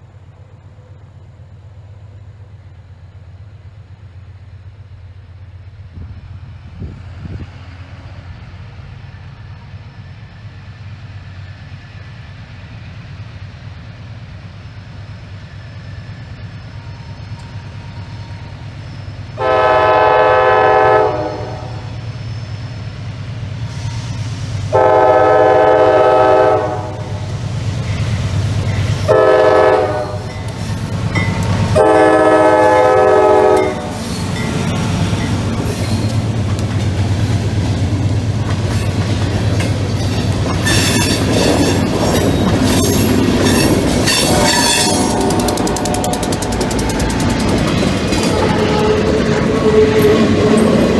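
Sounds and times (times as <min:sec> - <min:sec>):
diesel locomotive engine rumble: 0:00.0 - 0:50.9
locomotive air horn blasts: 0:19.4 - 0:22.0, 0:24.7 - 0:27.2, 0:29.0 - 0:30.4, 0:31.7 - 0:34.0, 0:42.8 - 0:46.4, 0:48.1 - 0:50.7.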